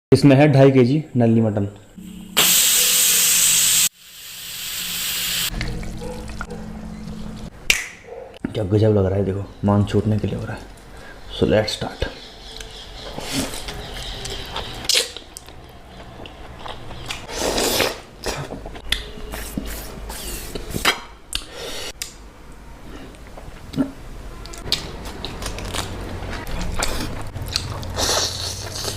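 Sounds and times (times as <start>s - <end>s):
wet chewing and slurping: 13.2s - 19.7s, 24.6s - 28.9s.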